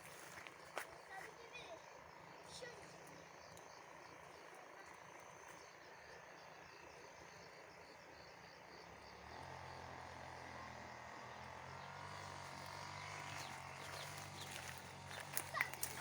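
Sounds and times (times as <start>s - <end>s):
faint crickets chirping: 0.0s - 16.0s.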